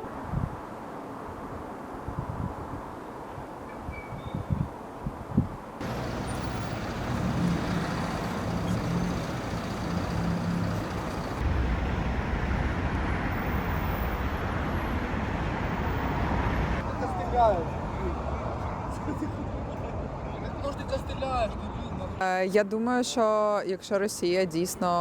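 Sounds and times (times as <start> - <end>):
road vehicles running: 5.8 - 20.3.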